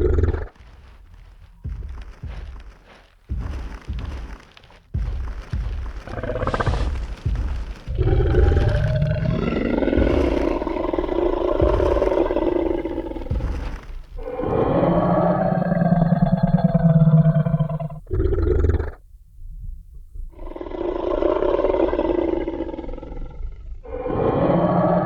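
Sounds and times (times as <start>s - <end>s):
heavy stomping footsteps: 0.0s - 17.8s
deep dinosaur roar: 5.9s - 18.9s, 20.6s - 25.0s.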